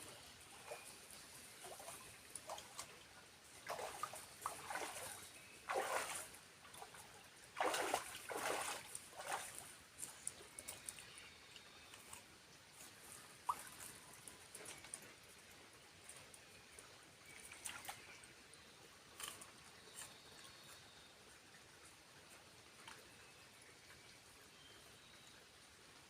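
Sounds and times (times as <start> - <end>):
water splashing and sloshing: 0.0 - 16.2, 17.2 - 18.4.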